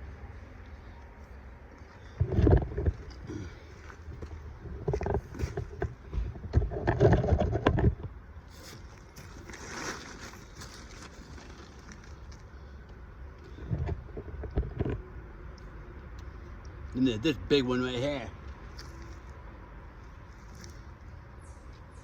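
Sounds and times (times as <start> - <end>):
rustling near microphone: 0.6 - 12.8.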